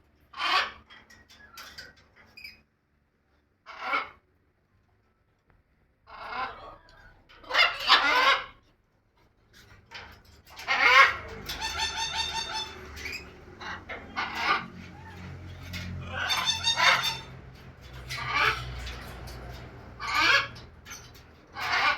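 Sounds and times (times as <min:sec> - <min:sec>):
birds calling loudly: 0:10.5 - 0:21.9.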